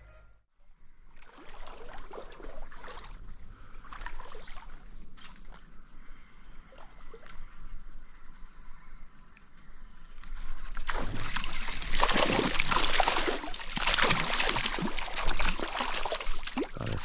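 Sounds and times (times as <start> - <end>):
stream water splashing: 1.2 - 5.0, 10.8 - 17.0.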